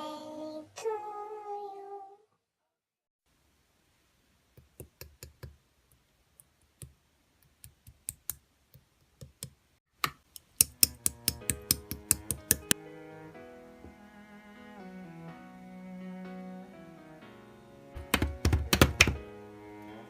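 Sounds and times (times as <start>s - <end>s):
background music with strings: 10.6s - 20.0s.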